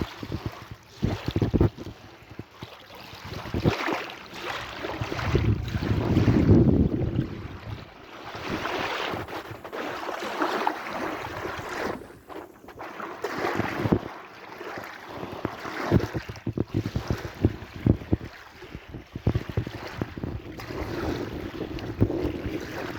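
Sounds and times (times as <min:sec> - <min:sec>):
wind gusting on microphone: 0:00.0 - 0:02.1, 0:04.8 - 0:10.0, 0:15.8 - 0:22.9
sea waves washing in: 0:03.2 - 0:22.9.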